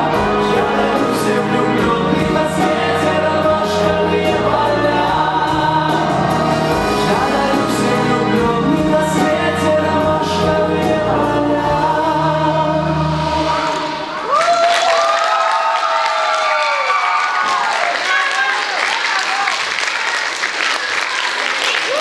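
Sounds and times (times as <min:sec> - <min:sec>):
choir singing: 0:00.0 - 0:14.3.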